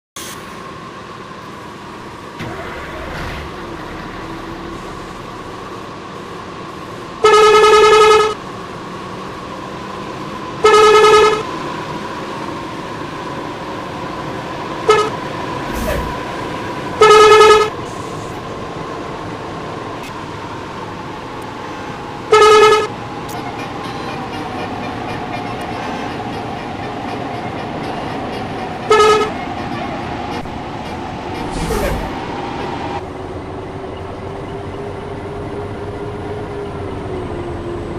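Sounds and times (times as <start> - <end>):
bus horn blasts: 7.2 - 8.4, 10.6 - 11.5, 14.8 - 16.2, 16.8 - 18.1, 22.2 - 32.1.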